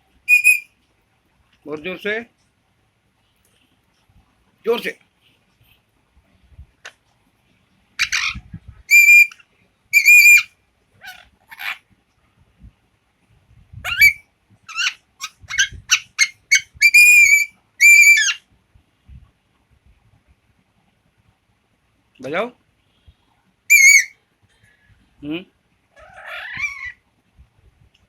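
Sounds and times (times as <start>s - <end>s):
parrot whistling: 0.3s - 0.6s, 8.0s - 10.5s, 13.9s - 18.4s, 23.7s - 24.1s.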